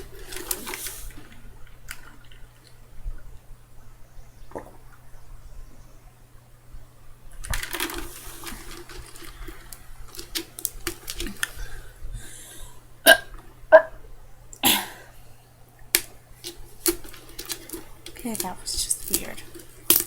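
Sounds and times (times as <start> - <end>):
person gulping water: 4.5 - 5.0, 8.8 - 12.3, 13.0 - 15.2
sudden throat sounds: 13.0 - 14.0, 14.6 - 15.1.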